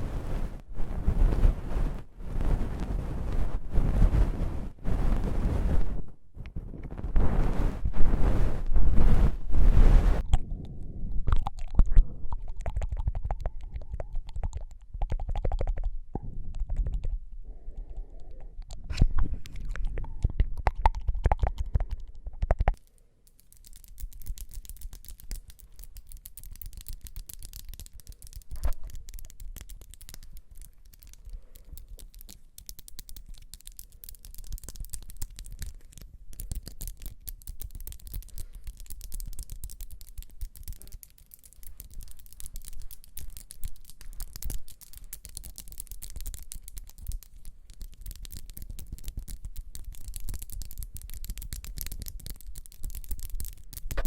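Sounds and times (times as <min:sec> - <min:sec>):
heavy rubbing with deep rumble: 0:00.0 - 0:10.2
scratching and brushing on microphone: 0:00.0 - 0:10.3, 0:18.0 - 0:22.6, 0:23.7 - 0:54.0.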